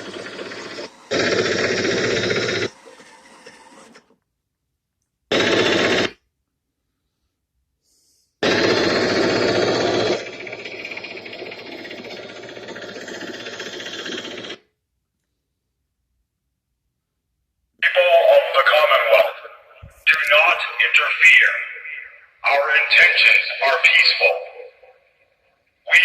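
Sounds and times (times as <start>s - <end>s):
sound effects from small speaker: 17.8s - 24.9s.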